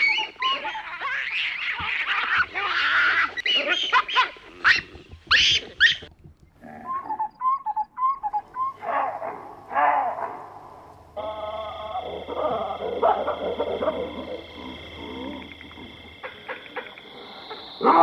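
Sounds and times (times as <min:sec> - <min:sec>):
baboons screaming and shrieking: 0:00.0 - 0:10.6, 0:11.2 - 0:18.0.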